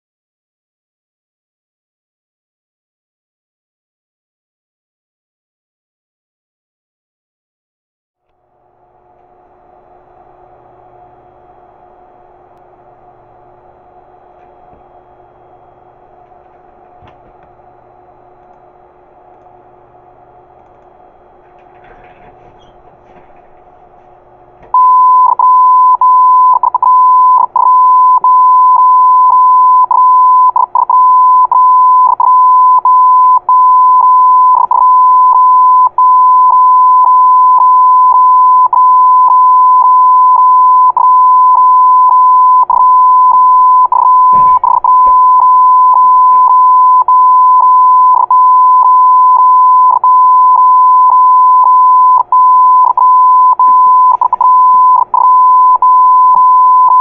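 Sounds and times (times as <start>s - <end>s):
morse code beeping: 24.7s - 57.0s.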